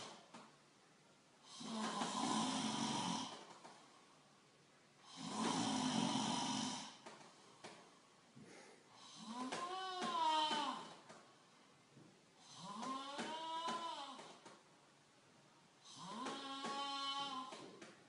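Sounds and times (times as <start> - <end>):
person snoring: 1.4 - 3.5, 5.0 - 7.0, 12.4 - 14.4, 15.8 - 17.6.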